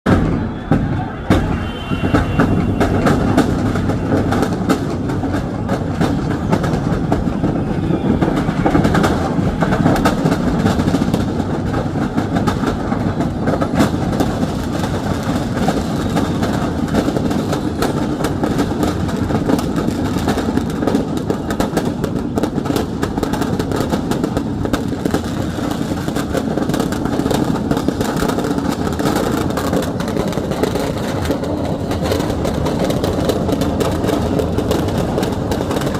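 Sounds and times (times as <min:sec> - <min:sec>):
firecrackers cracking and banging: 0:00.0 - 0:35.9.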